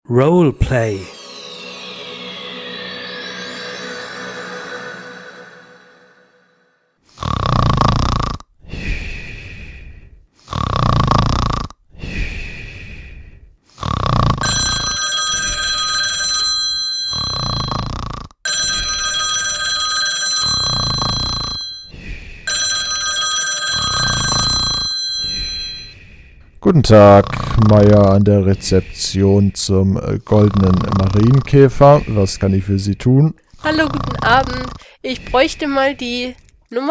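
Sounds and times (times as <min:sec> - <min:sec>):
telephone ringtone: 0:01.1 - 0:06.5, 0:14.4 - 0:26.0, 0:33.6 - 0:34.8
man snoring loudly: 0:07.1 - 0:08.5, 0:10.4 - 0:11.8, 0:13.7 - 0:14.9, 0:17.1 - 0:18.4, 0:20.4 - 0:22.0, 0:23.7 - 0:26.0, 0:26.9 - 0:28.8, 0:30.2 - 0:32.3, 0:33.6 - 0:34.9.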